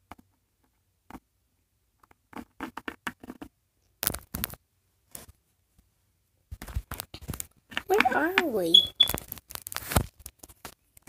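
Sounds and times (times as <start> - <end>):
objects scratching and tapping: 2.0 - 5.4, 6.5 - 11.0.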